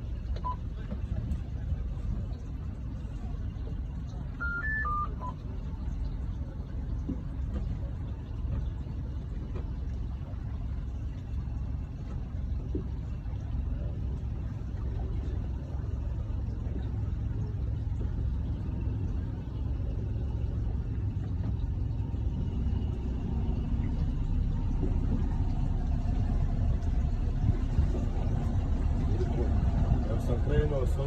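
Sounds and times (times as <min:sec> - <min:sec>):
motorboat engine rumbling: 0:00.0 - 0:31.0.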